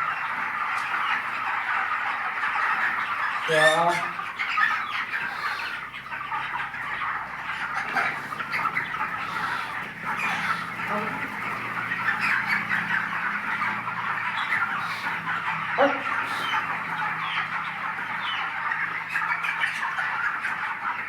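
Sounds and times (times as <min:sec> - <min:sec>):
chickens peeping and clucking: 0:00.0 - 0:21.0.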